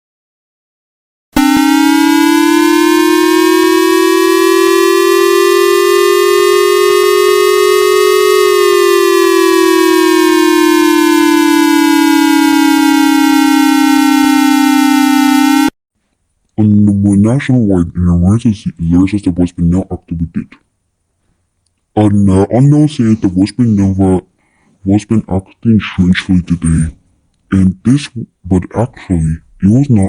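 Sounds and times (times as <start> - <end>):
electronic siren wail: 1.4 - 15.8.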